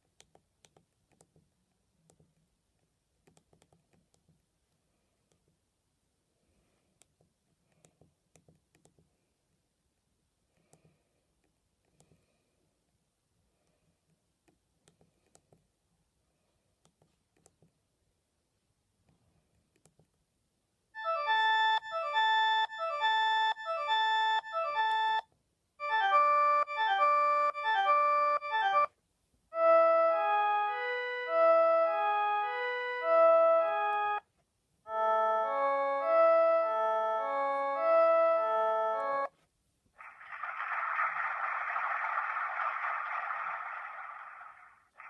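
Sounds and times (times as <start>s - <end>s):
electronic ringtone melodies: 21.0s - 25.2s, 25.8s - 28.9s, 29.6s - 34.2s, 34.9s - 39.3s.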